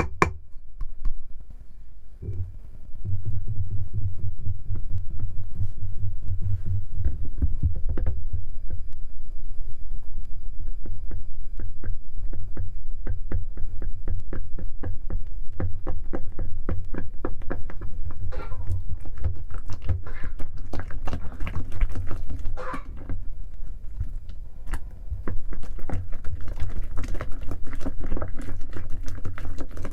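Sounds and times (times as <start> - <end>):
steady low rumble: 1.7 - 13.0, 22.1 - 26.4
wet slime squelches: 17.5 - 29.9.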